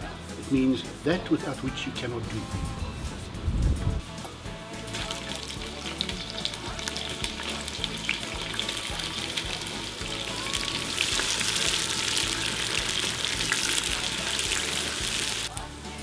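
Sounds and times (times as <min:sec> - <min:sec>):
onions sizzling in hot oil: 0:04.8 - 0:15.5.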